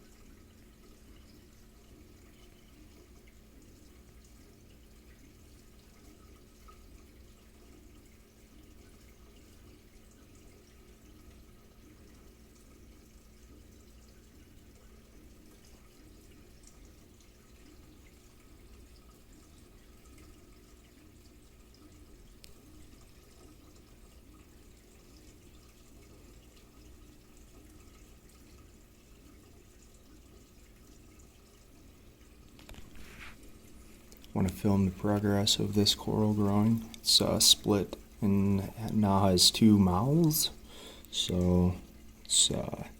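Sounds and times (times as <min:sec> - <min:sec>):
aquarium pump hum: 0:00.0 - 0:42.9
water trickling: 0:00.0 - 0:42.9.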